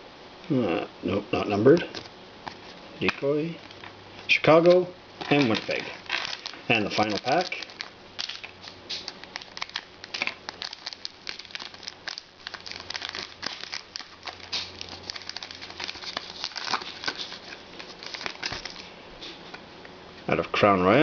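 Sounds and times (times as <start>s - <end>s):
card pack wrapper tearing and crinkling: 4.6s - 18.9s.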